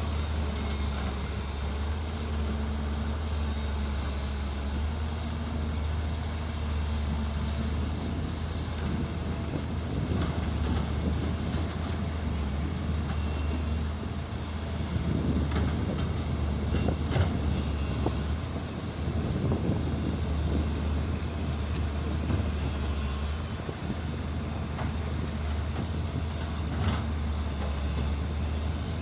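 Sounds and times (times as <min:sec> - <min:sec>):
diesel engine running: 0:00.0 - 0:29.0.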